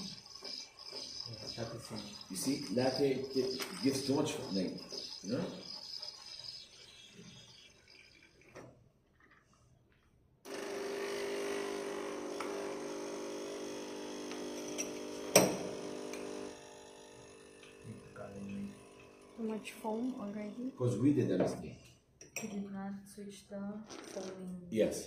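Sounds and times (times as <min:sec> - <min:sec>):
coffee machine humming and hissing: 0:00.0 - 0:08.1, 0:10.5 - 0:21.0.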